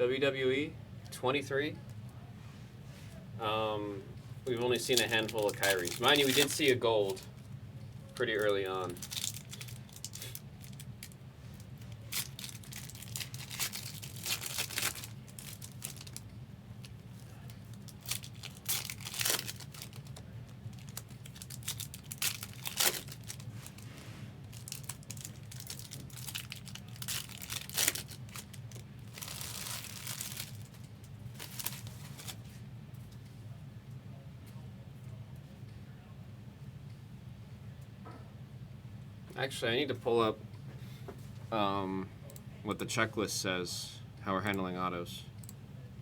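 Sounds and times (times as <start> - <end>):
steady low hum: 0.0 - 46.0
foil wrappers tearing and crinkling: 4.6 - 7.3, 8.1 - 16.2, 16.8 - 23.8, 24.4 - 32.4.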